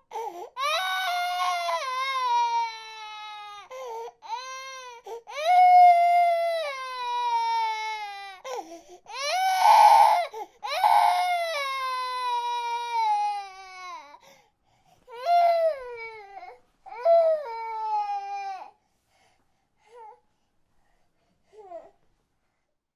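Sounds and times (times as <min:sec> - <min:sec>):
baby crying: 0:00.1 - 0:14.2, 0:15.1 - 0:18.7.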